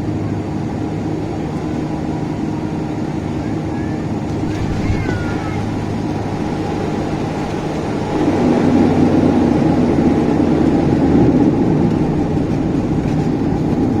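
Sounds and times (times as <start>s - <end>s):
turboprop engines droning: 0.0s - 14.0s.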